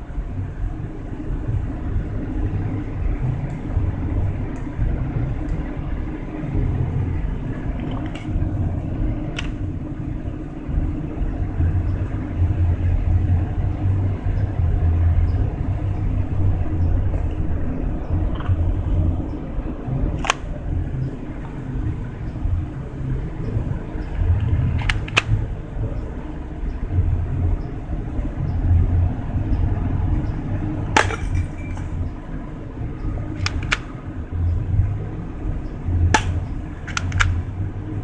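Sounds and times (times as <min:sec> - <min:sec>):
low rumble: 0:00.0 - 0:38.0
sharp clicks: 0:24.8 - 0:25.4, 0:33.4 - 0:33.9, 0:36.2 - 0:37.5.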